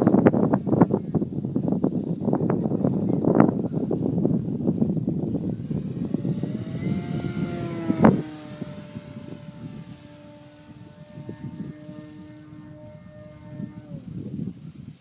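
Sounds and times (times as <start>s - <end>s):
model plane motor whining: 3.4s - 14.9s.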